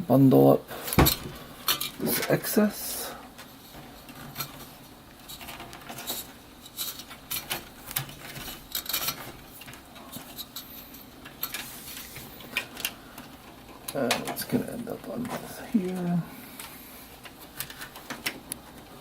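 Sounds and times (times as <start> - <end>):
light rustles rubs and clicks: 3.4 - 13.8.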